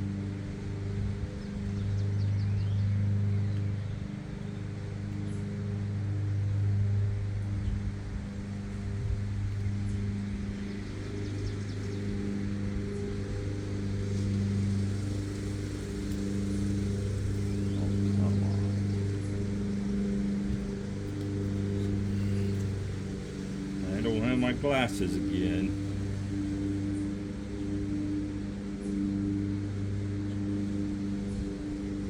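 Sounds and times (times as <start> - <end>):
lawn mower engine running: 0.0 - 32.0
faint ticks: 3.5 - 3.8.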